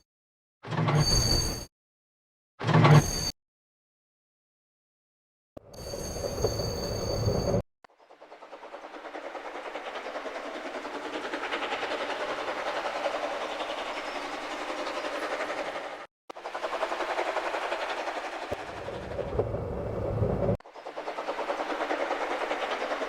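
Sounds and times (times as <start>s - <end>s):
train running with rhythmic pulse: 5.6s - 23.0s.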